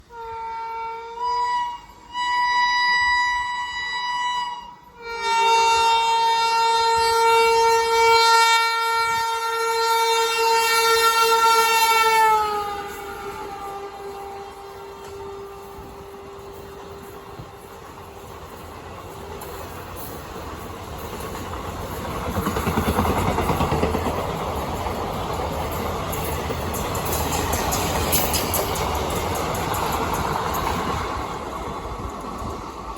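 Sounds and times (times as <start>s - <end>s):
train wheels rumbling on track: 0.0s - 32.9s
locomotive horn blast: 0.1s - 18.2s
wheels clicking over rail joints: 12.0s - 32.9s.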